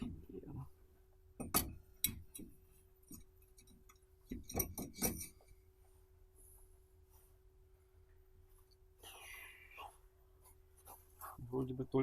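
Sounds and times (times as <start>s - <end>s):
metal tools clinking and knocking: 1.5s - 5.5s.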